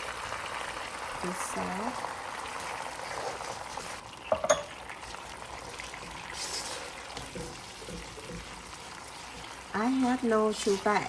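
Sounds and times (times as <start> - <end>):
sauce bubbling and sizzling: 0.0 - 11.0
utensil clinking against pan: 4.3 - 4.7.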